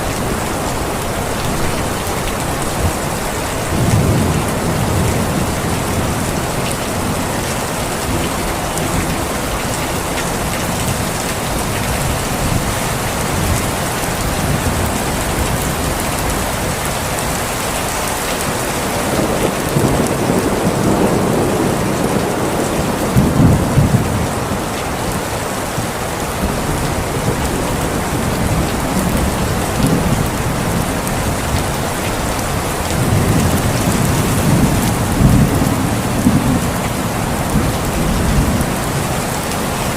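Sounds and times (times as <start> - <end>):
heavy rain falling: 0.0 - 39.9
low rolls of thunder: 18.9 - 25.2, 26.2 - 39.1.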